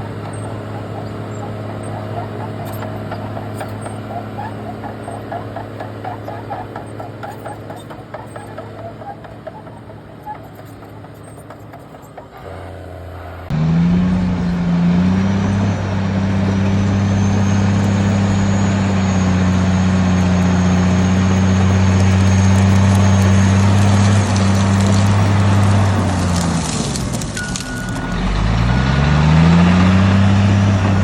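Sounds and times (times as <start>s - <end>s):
heavy diesel engine running: 0.0s - 31.0s.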